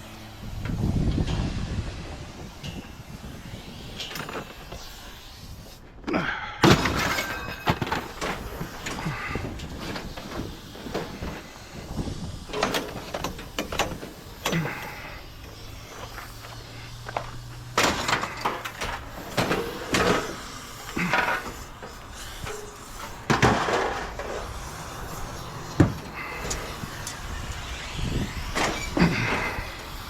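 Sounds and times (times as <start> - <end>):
objects knocking and clunking: 6.6 - 27.2.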